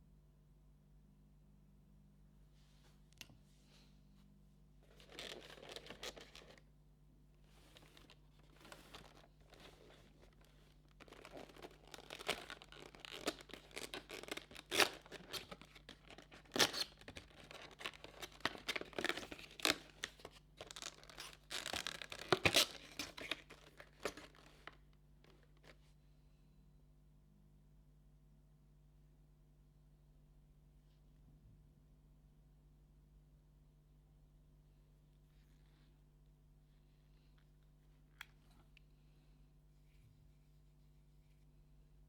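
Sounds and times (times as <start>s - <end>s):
packaging rustling: 4.8s - 6.6s, 7.6s - 25.7s
packaging tearing and crinkling: 4.9s - 6.6s, 7.9s - 24.8s.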